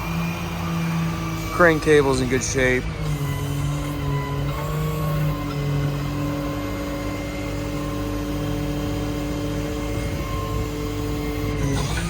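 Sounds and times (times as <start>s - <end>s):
diesel engine running: 0.0s - 12.0s
hydraulic whine: 0.0s - 12.0s.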